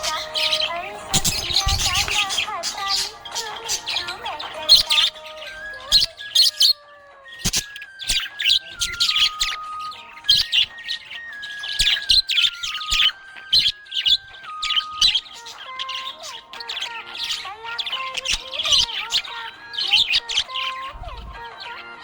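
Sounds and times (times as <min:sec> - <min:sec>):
budgerigars chirping and warbling: 0:00.0 - 0:22.0.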